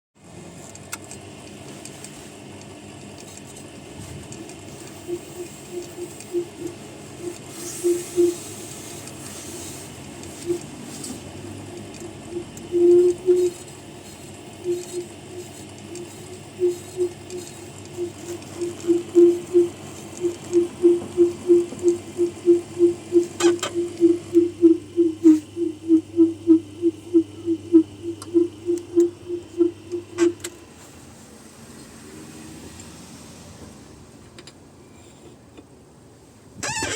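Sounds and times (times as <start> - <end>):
sharpening machine motor hum: 3.3 - 30.5
machine creaking: 10.2 - 30.5.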